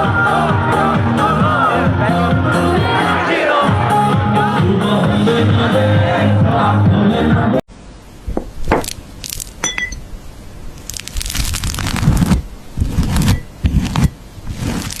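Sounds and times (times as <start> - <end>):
ringing metal clink: 9.6 - 10.1
knife scraping crisp bread: 11.8 - 15.0.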